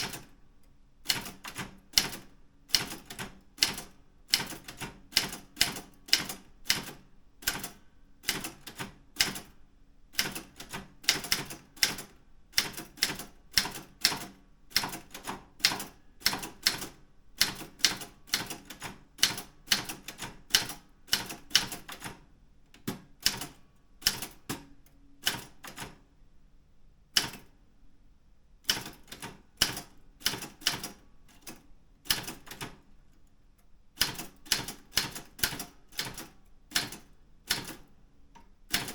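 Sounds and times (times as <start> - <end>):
typewriter key strikes: 34.0 - 37.8.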